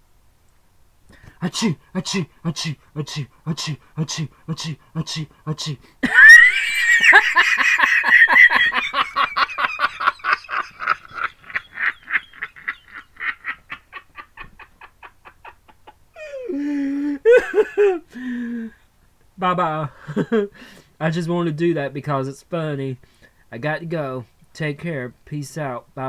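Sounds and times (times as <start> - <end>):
person giggling rapidly: 5.0 - 18.3.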